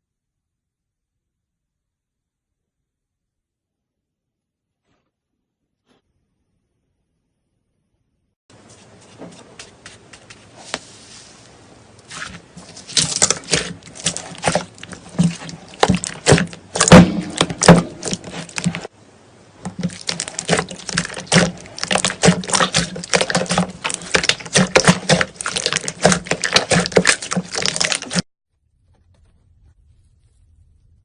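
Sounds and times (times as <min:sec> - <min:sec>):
slime squished by hand: 0:12.0 - 0:18.9, 0:19.6 - 0:28.2.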